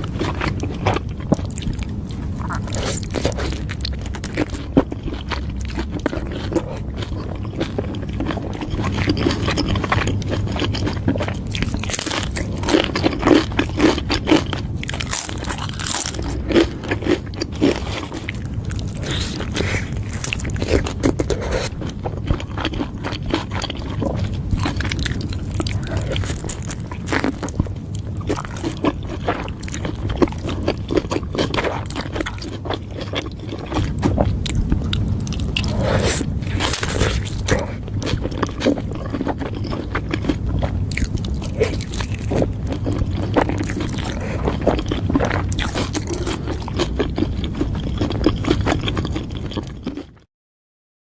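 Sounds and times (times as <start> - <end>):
steady low rumble: 0.0 - 49.8
crunchy chewing and biting: 0.0 - 50.2.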